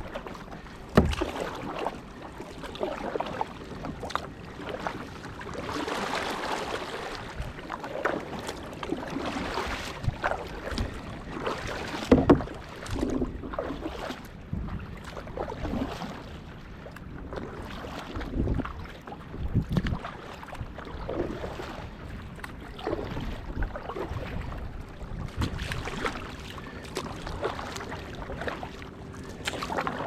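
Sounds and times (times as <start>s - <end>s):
paddle strokes splashing: 0.0s - 30.0s
water washing against hull: 0.0s - 30.0s.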